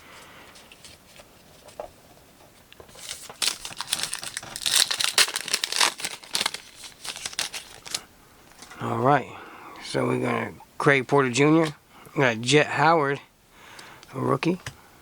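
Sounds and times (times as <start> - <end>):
wrapper tearing and crinkling: 2.9 - 8.1.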